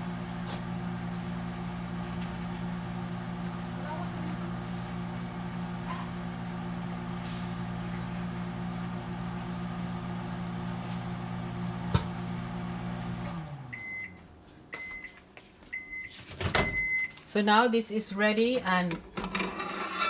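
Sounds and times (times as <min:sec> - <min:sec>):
microwave oven humming: 0:00.0 - 0:15.1
microwave beep: 0:12.4 - 0:17.2.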